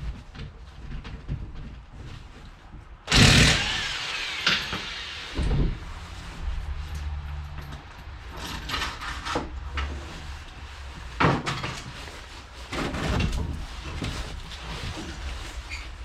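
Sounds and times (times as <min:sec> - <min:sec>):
tools scraping and knocking: 0:07.0 - 0:10.3, 0:11.0 - 0:15.1.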